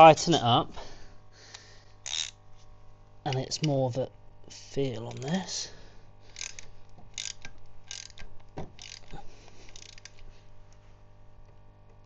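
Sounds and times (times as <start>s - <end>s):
ratchet wrench clicking: 2.0s - 2.4s, 6.4s - 10.2s.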